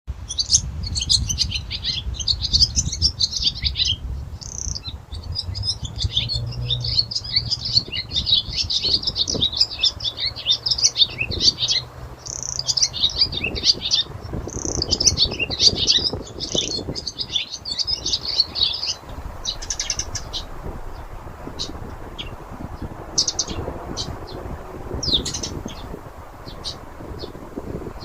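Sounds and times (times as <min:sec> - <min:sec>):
small birds chirping: 0:00.2 - 0:28.0
low steady hum: 0:18.4 - 0:28.0.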